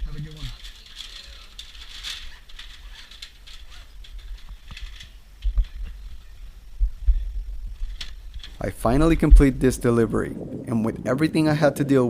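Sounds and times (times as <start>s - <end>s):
steady low rumble: 4.3s - 12.0s
low thumps: 5.4s - 11.5s.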